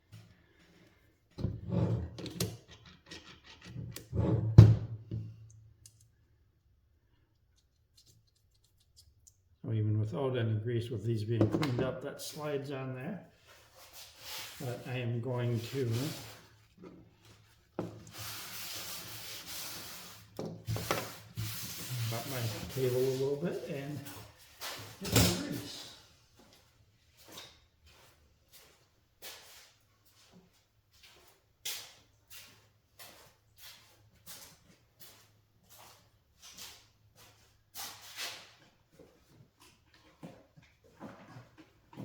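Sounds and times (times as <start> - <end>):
scrubbing on a workbench: 18.0 - 24.8.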